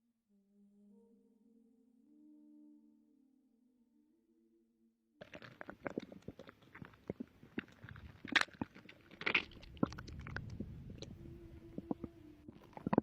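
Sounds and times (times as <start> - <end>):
clicks and crackling pops: 5.2 - 13.0
stomach gurgling: 5.2 - 13.0
low rumble: 9.3 - 13.0.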